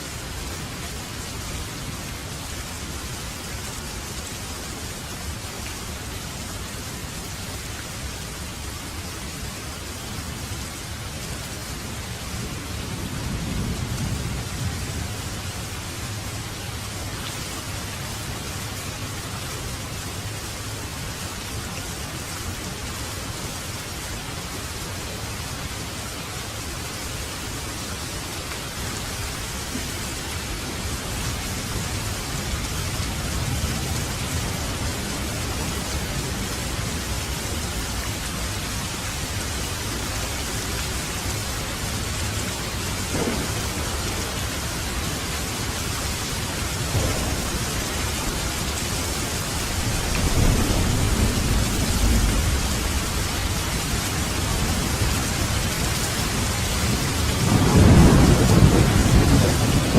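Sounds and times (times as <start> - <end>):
rain falling: 0.0 - 59.9
thunder rumbling: 42.9 - 59.9.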